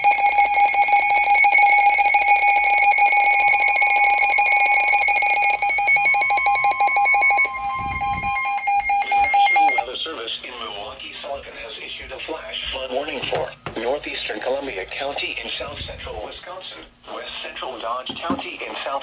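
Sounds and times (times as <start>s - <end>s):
pulsing electronic alarm tone: 0.0s - 9.8s.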